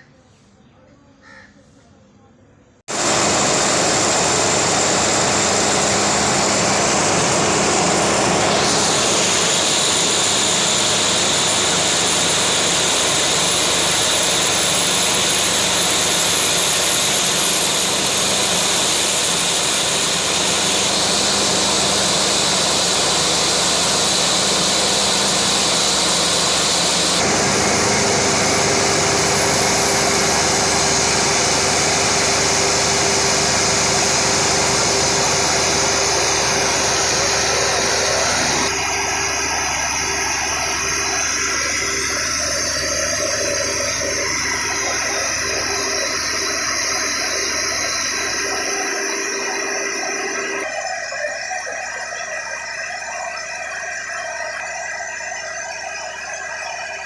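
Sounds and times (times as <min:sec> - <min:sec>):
machine noise with rising whine: 0:02.9 - 0:57.0.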